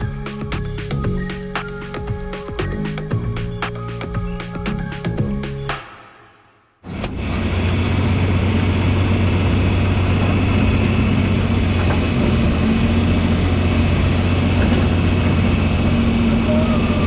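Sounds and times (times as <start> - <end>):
tractor engine humming: 6.9 - 17.0.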